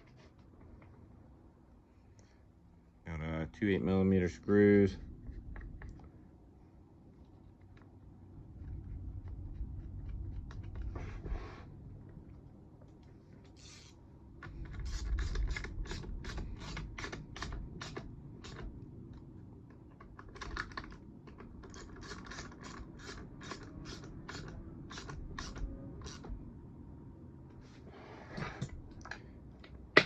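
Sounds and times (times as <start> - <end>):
ratcheting hand tool clicking: 21.6 - 26.3.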